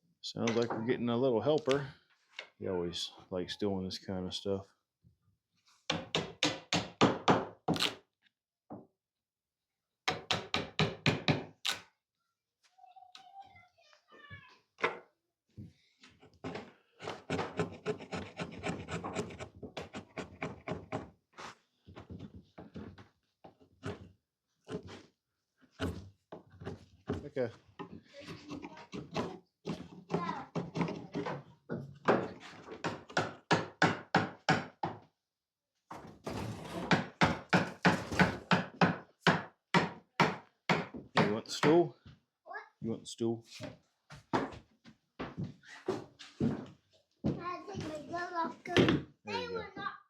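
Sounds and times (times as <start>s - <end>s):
hammer striking wood: 5.9s - 7.7s, 10.1s - 11.5s, 32.0s - 35.0s, 36.9s - 41.8s
hand tool scraping wood: 16.2s - 21.7s, 25.7s - 31.4s, 36.2s - 38.5s.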